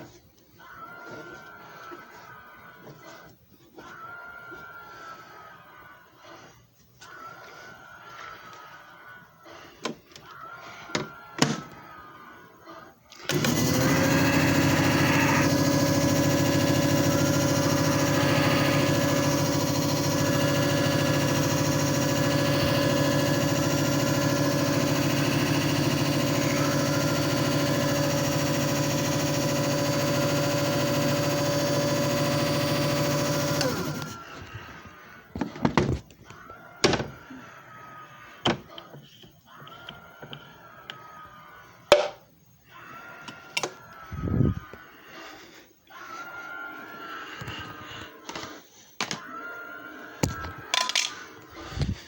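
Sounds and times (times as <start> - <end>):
machine motor hum: 13.3 - 35.5.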